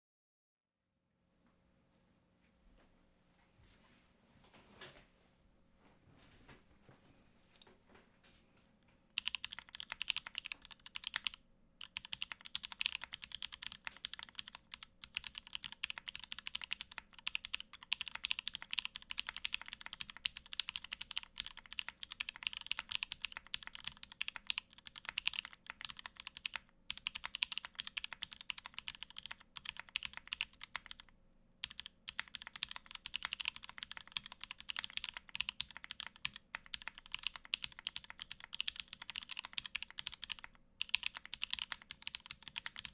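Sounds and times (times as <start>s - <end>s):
fast typing on mechanical keyboard: 9.2s - 42.9s.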